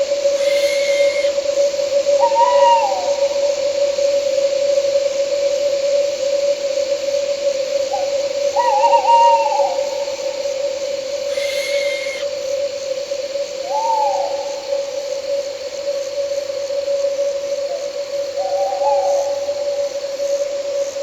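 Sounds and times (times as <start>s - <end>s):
crickets chirring: 0.0s - 21.0s
owl hooting: 0.3s - 1.4s, 11.2s - 12.3s
steady hum: 11.3s - 12.3s.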